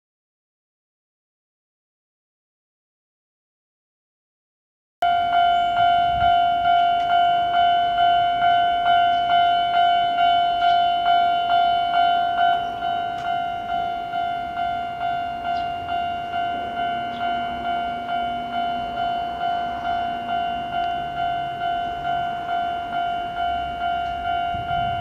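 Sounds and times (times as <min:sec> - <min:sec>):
level-crossing warning bell ringing: 0:05.0 - 0:25.0.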